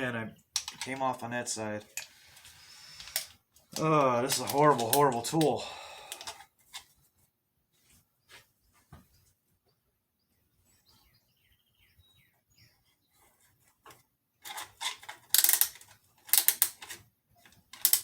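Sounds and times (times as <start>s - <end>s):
ratchet clicking: 15.3s - 17.0s, 17.8s - 18.0s.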